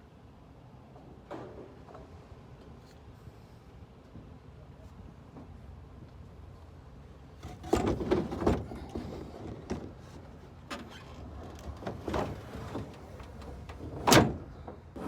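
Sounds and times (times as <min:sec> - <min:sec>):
knocks and clunks: 0:07.4 - 0:15.0.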